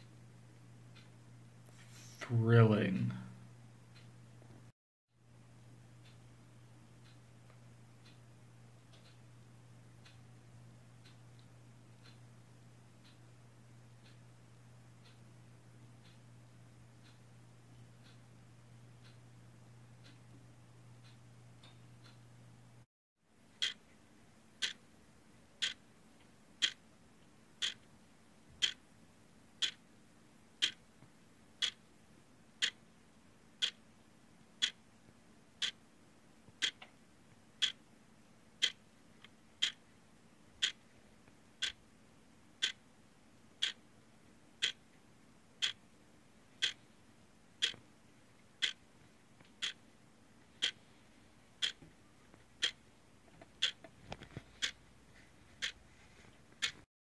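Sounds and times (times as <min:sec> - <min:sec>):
clock ticking: 0:00.0 - 0:01.3, 0:05.8 - 0:22.3, 0:23.6 - 0:23.9, 0:24.6 - 0:24.8, 0:25.6 - 0:25.8, 0:26.6 - 0:26.8, 0:27.6 - 0:27.9, 0:28.6 - 0:28.8, 0:29.6 - 0:29.8, 0:30.6 - 0:30.8, 0:31.6 - 0:31.8, 0:32.6 - 0:32.8, 0:33.6 - 0:33.8, 0:34.6 - 0:34.8, 0:35.6 - 0:35.8, 0:36.5 - 0:36.9, 0:37.6 - 0:37.8, 0:38.6 - 0:39.8, 0:40.6 - 0:40.8, 0:41.6 - 0:41.8, 0:42.6 - 0:42.8, 0:43.6 - 0:43.8, 0:44.6 - 0:44.8, 0:45.6 - 0:45.8, 0:46.6 - 0:46.8, 0:47.6 - 0:47.8, 0:48.6 - 0:48.8, 0:49.4 - 0:49.9, 0:50.5 - 0:50.9, 0:51.6 - 0:51.9, 0:52.5 - 0:52.8, 0:53.4 - 0:54.8, 0:55.6 - 0:55.8, 0:56.5 - 0:56.9
faint low hum: 0:00.0 - 0:56.8.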